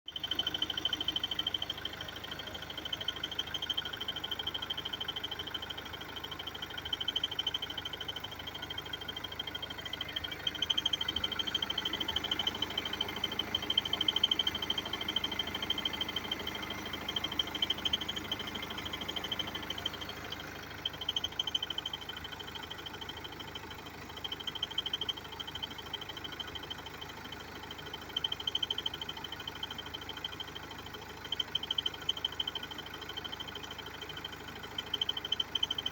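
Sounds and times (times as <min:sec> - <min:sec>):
diesel engine ticking clatter: 0:00.0 - 0:35.9
high-pitched engine whine: 0:00.1 - 0:23.3.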